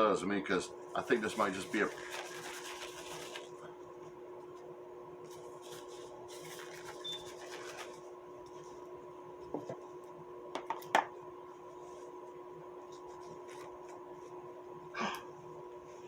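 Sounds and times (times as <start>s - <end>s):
steady electrical hum: 0.0s - 16.0s
soft rustling and handling: 0.9s - 10.2s, 11.6s - 14.6s.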